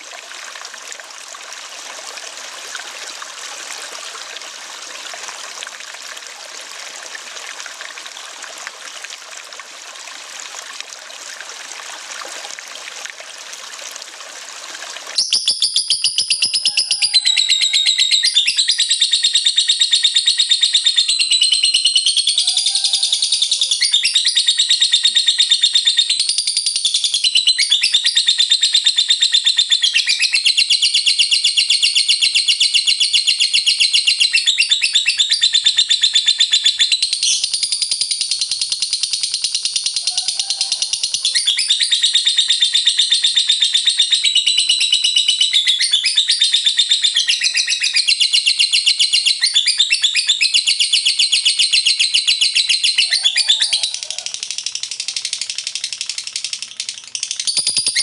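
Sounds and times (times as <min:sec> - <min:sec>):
running water: 0:00.0 - 0:18.4
bird chattering trill: 0:15.2 - 0:58.0.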